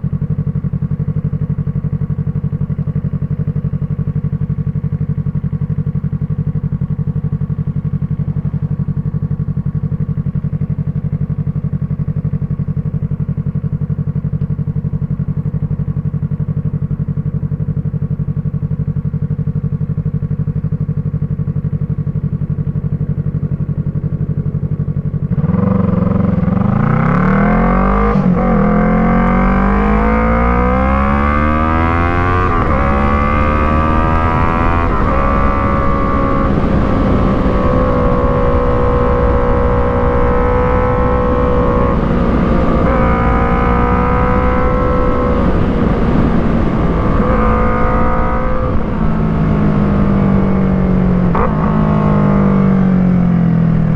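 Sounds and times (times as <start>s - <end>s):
motorcycle engine idling and revving: 0.0s - 53.9s.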